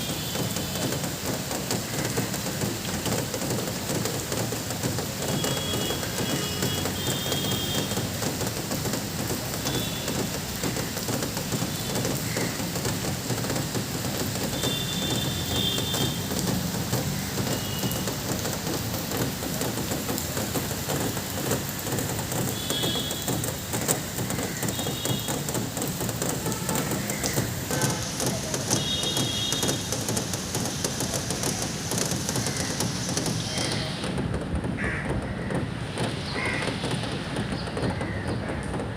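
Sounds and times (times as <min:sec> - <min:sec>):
steady rain: 0:00.0 - 0:38.9.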